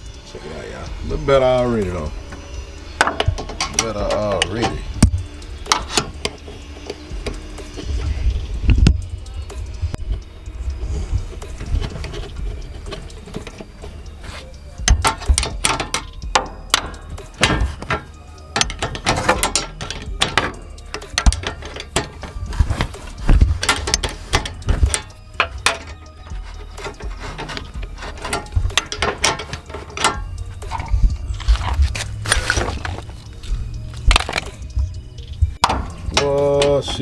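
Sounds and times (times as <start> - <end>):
metal knocks and clanks: 1.1 - 9.0, 10.8 - 37.0
ratchet wrench clicking: 10.4 - 32.3.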